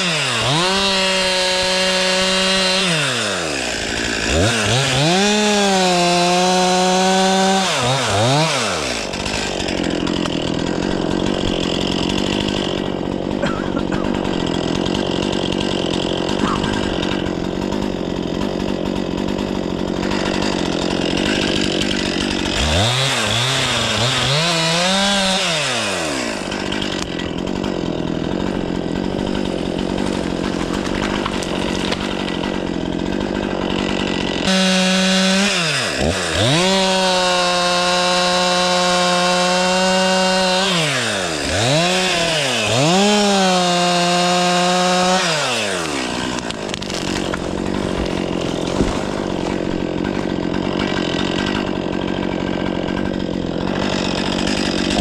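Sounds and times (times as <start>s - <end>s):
chainsaw cutting wood: 0.0s - 55.0s.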